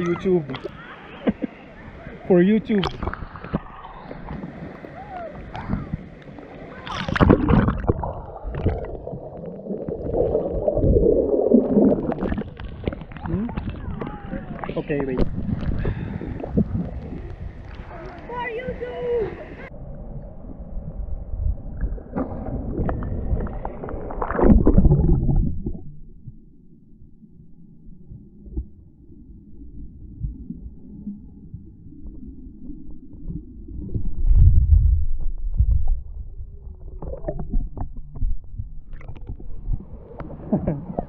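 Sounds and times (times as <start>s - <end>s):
sea water splashing: 0.0s - 26.3s
low underwater rumble: 0.0s - 41.0s.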